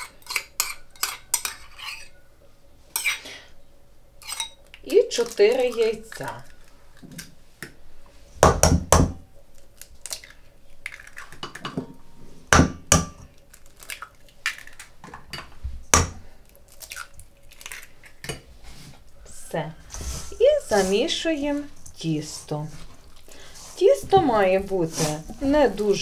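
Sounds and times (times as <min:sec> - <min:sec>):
eggs cracking against a bowl: 0:00.0 - 0:02.0, 0:04.2 - 0:07.8, 0:08.4 - 0:11.8, 0:12.7 - 0:18.5.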